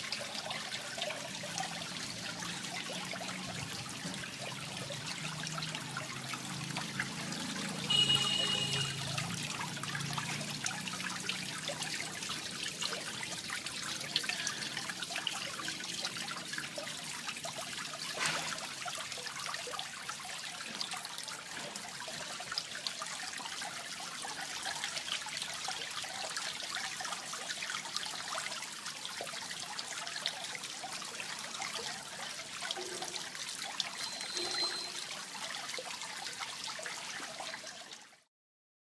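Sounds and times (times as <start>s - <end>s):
water trickling into a pond: 0.0s - 38.3s
high-pitched tone: 34.0s - 35.0s.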